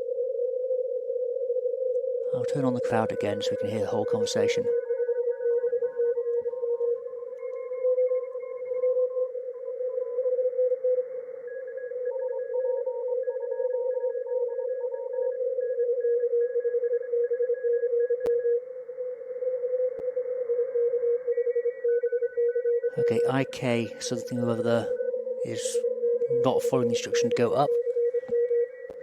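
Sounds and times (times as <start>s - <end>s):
morse code tones: 2.3s - 5.0s, 22.9s - 29.0s
radio band hiss: 23.0s - 27.8s.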